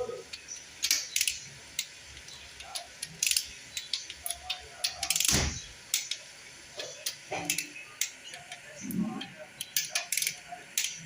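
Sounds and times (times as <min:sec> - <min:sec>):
light mechanical clicks: 0:09.6 - 0:11.0.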